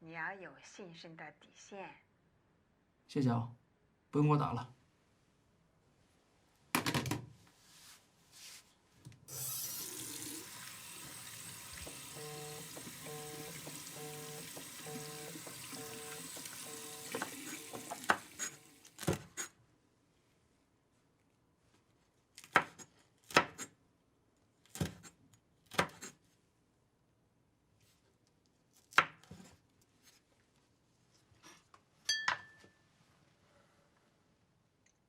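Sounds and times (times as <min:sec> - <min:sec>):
telephone busy tone: 0:11.4 - 0:17.8
kitchenware knocks and clinks: 0:32.1 - 0:32.8.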